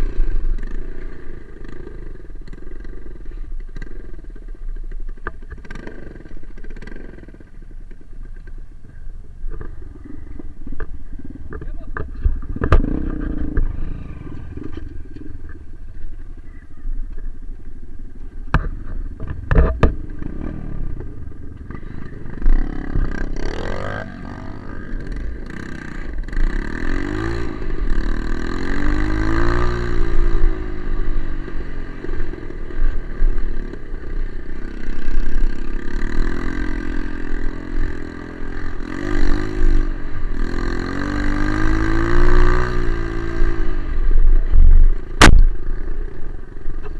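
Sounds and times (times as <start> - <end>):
dirt bike engine revving: 5.5 - 7.7, 11.5 - 15.6, 19.2 - 44.1.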